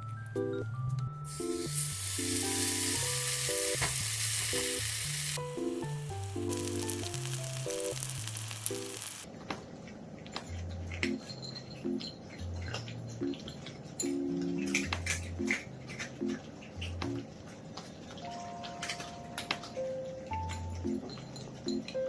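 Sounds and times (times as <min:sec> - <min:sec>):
light background music: 0:00.0 - 0:09.4, 0:10.3 - 0:22.0
steady hiss: 0:01.3 - 0:09.3.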